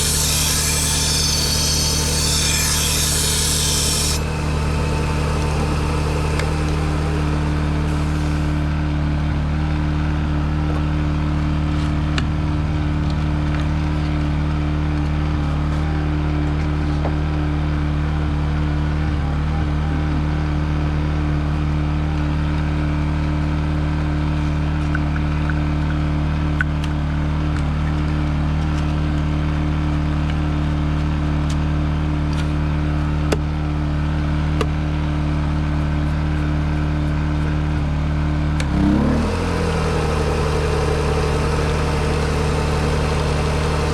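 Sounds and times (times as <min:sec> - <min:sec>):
belt sharpener motor running: 0:00.0 - 0:08.7, 0:38.6 - 0:43.9.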